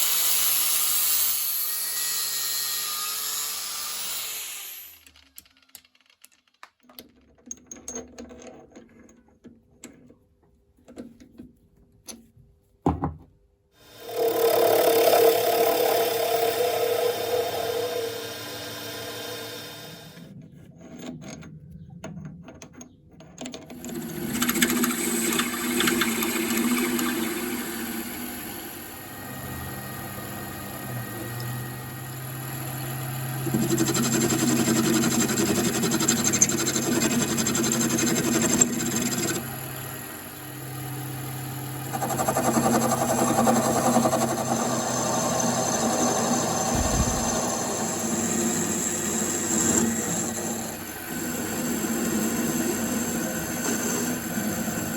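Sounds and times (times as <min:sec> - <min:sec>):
lathe motor hum: 0:13.9 - 0:20.2, 0:23.7 - 0:54.9
metal machining noise: 0:13.9 - 0:20.2, 0:23.7 - 0:54.9.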